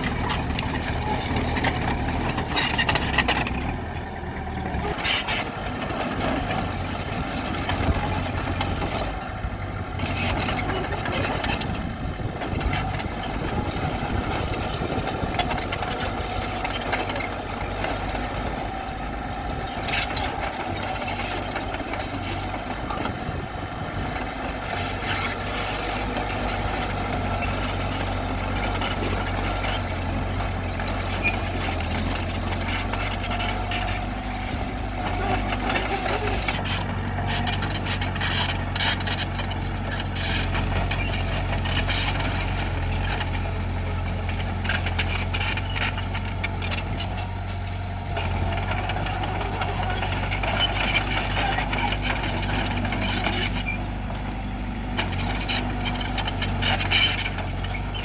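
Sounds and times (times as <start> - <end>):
metal tracks clanking on rock: 0.0 - 3.9
bulldozer diesel engine running: 0.0 - 58.0.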